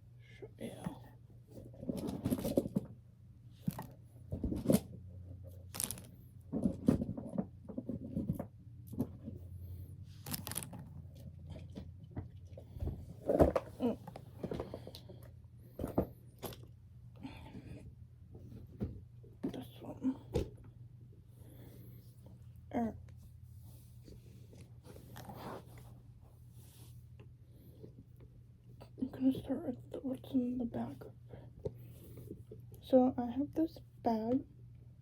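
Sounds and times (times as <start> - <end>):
steady low hum: 0.0 - 35.0
toys knocking and rustling: 1.6 - 3.0, 3.6 - 9.4, 10.3 - 16.8.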